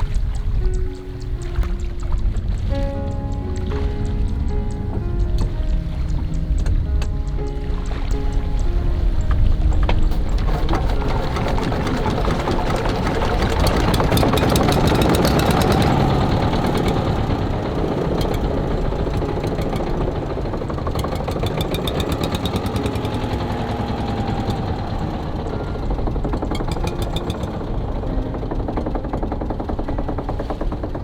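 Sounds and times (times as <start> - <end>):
small engine running: 9.4 - 31.0.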